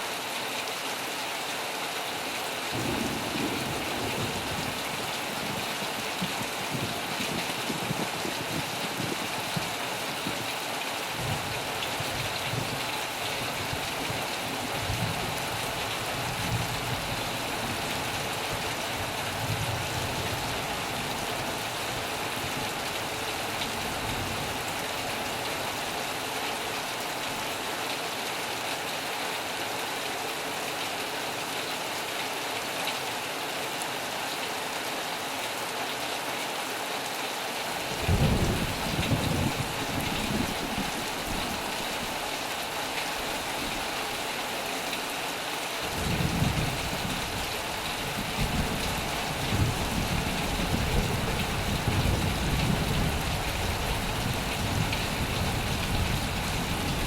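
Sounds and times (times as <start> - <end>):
heavy rain on a metal roof: 0.0 - 57.0
thunder rumble: 2.8 - 9.7, 37.9 - 42.2.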